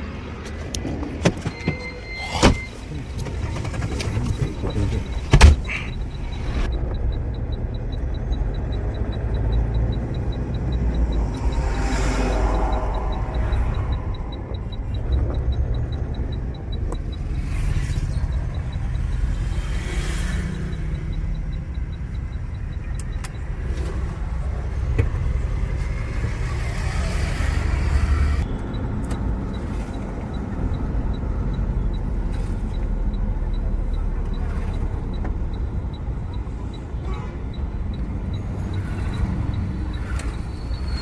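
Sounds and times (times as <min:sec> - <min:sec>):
diesel engine drone: 0:00.0 - 0:41.0
quick regular ticking: 0:02.8 - 0:27.6.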